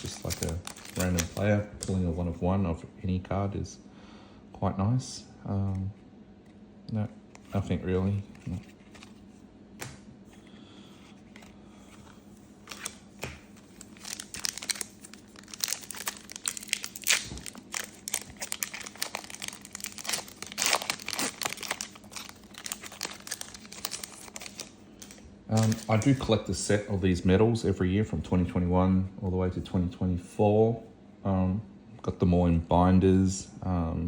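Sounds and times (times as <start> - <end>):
card pack wrapper crinkling and tearing: 0.0 - 1.9, 12.6 - 26.4.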